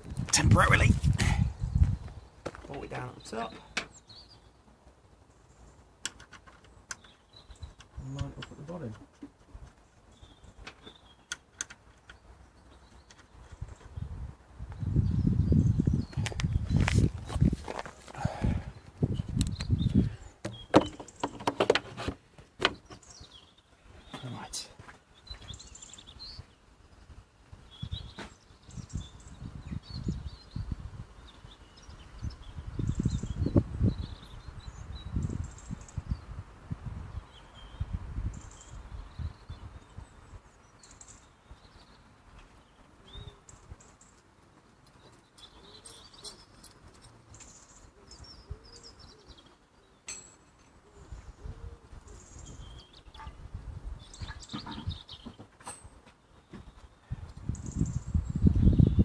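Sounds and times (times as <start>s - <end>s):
birds chirping: 0.0s - 59.0s
pigeon cooing: 50.8s - 52.3s.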